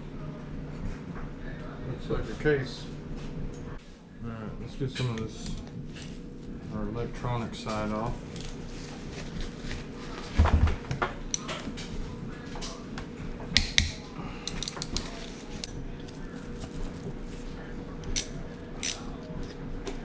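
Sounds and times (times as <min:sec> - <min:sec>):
tools and metal parts clinking: 0:08.3 - 0:08.6, 0:14.4 - 0:15.7, 0:18.0 - 0:19.1.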